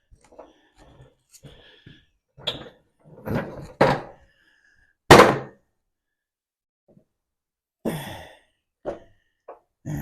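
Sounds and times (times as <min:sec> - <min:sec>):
loud thunk: 0:05.1 - 0:05.6.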